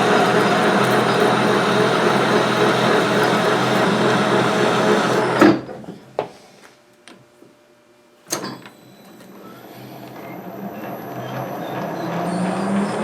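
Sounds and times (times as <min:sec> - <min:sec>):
metal lathe whirring: 0:00.0 - 0:05.5, 0:09.4 - 0:13.0.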